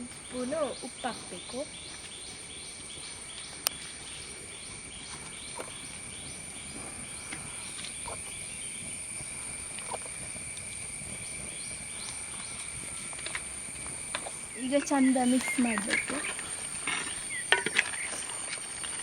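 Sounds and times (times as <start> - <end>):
insects droning and chirping: 0.0 - 19.0
faint ticks: 3.3 - 3.8.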